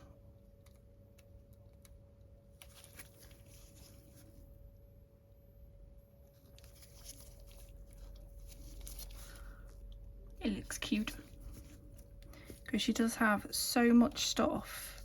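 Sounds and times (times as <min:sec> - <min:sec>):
faint steady hum: 0:00.0 - 0:15.0
stickers rustling and peeling: 0:01.2 - 0:04.6, 0:06.4 - 0:15.0.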